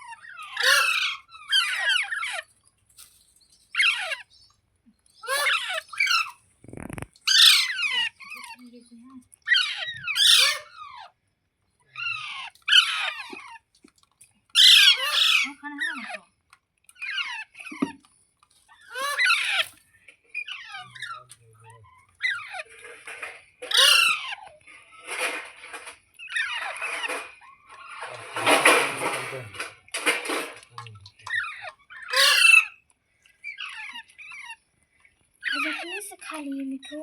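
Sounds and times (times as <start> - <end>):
parakeet squawking: 0.0 - 2.4, 3.8 - 4.4, 5.2 - 8.7, 9.5 - 11.1, 12.0 - 13.6, 14.6 - 16.2, 17.0 - 17.9, 18.7 - 19.7, 20.4 - 24.6, 30.7 - 32.8, 33.4 - 34.6.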